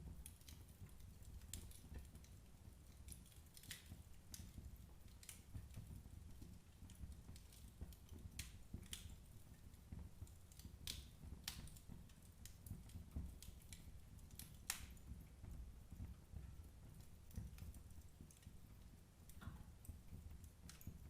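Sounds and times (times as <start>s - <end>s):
low rumble of flame: 0.0s - 21.0s
firewood popping and snapping: 3.0s - 4.4s, 10.2s - 15.0s.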